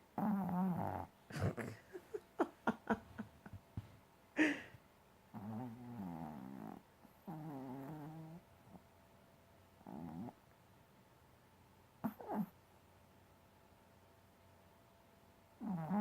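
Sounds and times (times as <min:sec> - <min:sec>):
dog snoring: 0:00.2 - 0:01.7, 0:05.3 - 0:08.8, 0:09.8 - 0:10.4, 0:12.0 - 0:12.6, 0:15.6 - 0:16.0
dog snort: 0:00.2 - 0:01.8, 0:05.3 - 0:08.4, 0:09.8 - 0:10.4, 0:12.0 - 0:12.5, 0:15.6 - 0:16.0.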